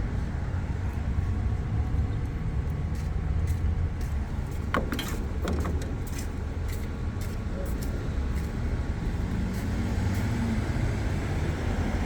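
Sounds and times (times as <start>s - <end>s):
low rumble of street traffic: 0.0s - 12.0s
clicks and rattles: 4.6s - 6.5s.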